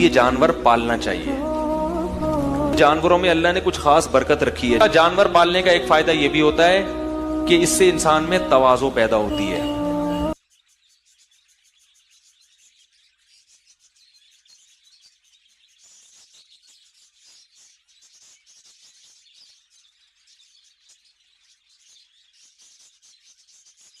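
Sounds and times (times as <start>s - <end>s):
flock of budgerigars chattering: 9.3s - 24.0s.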